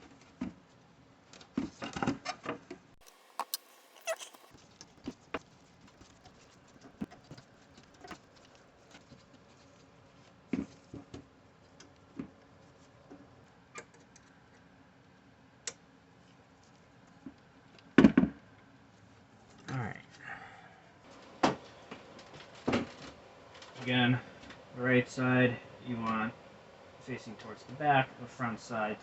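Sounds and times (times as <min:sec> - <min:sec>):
screwdriver and small parts clicking: 0:03.0 - 0:04.5.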